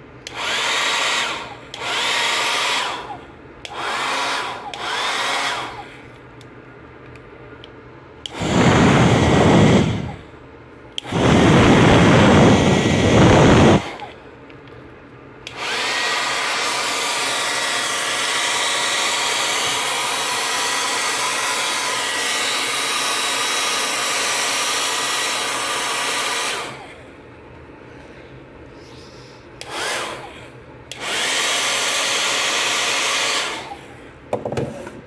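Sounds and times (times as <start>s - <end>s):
hair dryer blowing: 0.2s - 6.1s, 8.2s - 10.4s, 11.0s - 14.2s, 15.4s - 27.2s, 29.6s - 34.0s.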